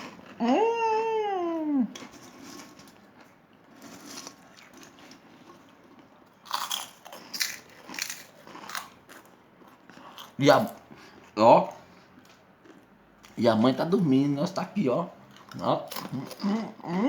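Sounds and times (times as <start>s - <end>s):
person chewing crunchy food: 1.9s - 13.4s, 15.2s - 16.9s.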